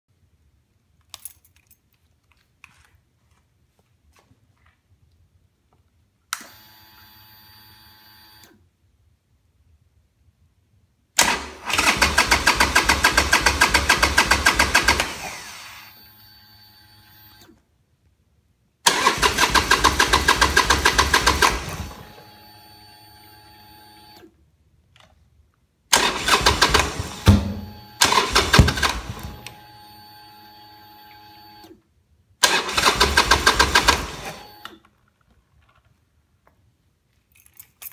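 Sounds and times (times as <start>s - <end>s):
motorcycle engine cranking: 11.2s - 15.1s, 18.9s - 21.9s, 26.0s - 29.3s, 32.4s - 34.2s.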